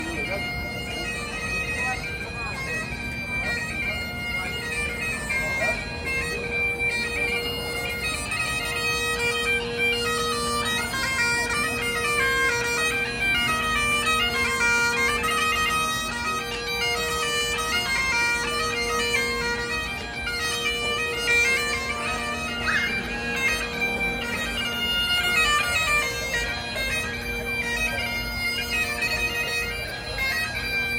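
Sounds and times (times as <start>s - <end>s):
bagpipes playing a tune: 0.0s - 30.9s.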